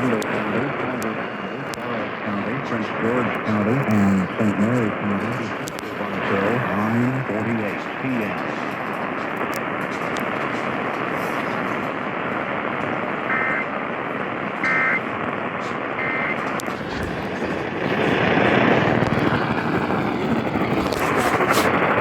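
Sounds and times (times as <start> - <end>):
radio static: 0.0 - 22.0
two-tone data tone bursts: 14.6 - 15.0.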